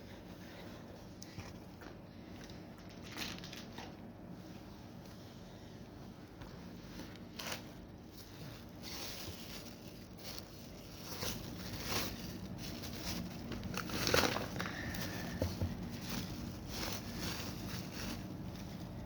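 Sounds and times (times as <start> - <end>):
packaging crinkling and rustling: 1.8 - 4.1, 6.7 - 19.0.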